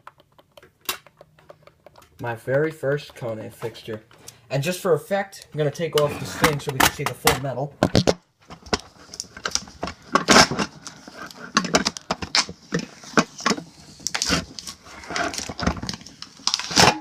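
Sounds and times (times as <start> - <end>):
small clicks and knocks: 0.0 - 4.4
plastic crinkling and rustling: 7.9 - 17.0.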